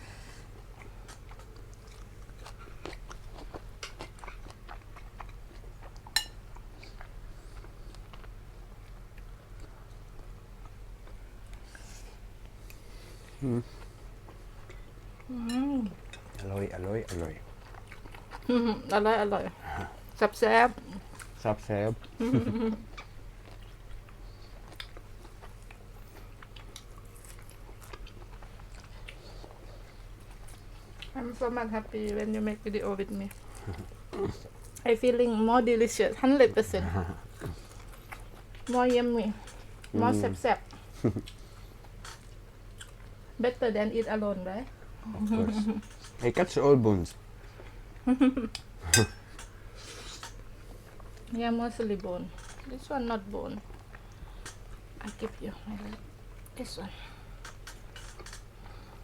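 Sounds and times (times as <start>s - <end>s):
low steady hum: 0.0s - 59.0s
chewing mouth noises: 0.6s - 11.8s, 17.0s - 19.0s, 22.9s - 31.2s, 40.6s - 43.2s, 53.6s - 56.6s, 57.4s - 58.5s
utensils clicking on dishes: 48.9s - 49.5s
mouth clicks and crunches: 57.4s - 58.5s.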